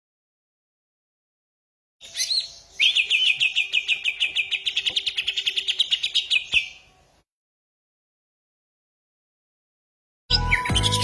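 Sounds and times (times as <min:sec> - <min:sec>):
songbird trilling: 0:02.0 - 0:07.0.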